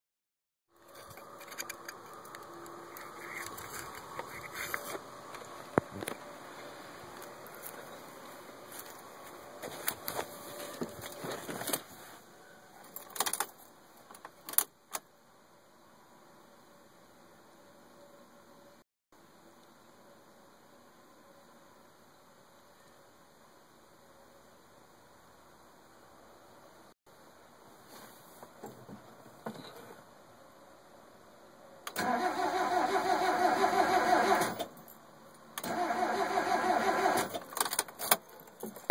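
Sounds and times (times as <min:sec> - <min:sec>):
sharp clicks and rattles: 0:12.9 - 0:15.0, 0:37.2 - 0:38.9
car engine cranking without starting: 0:31.9 - 0:34.7, 0:35.6 - 0:37.7.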